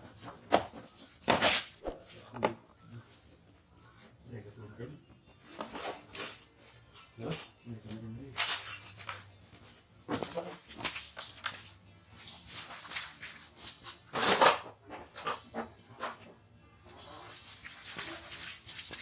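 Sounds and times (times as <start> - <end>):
tools and parts clattering: 5.4 - 16.3, 16.9 - 19.0.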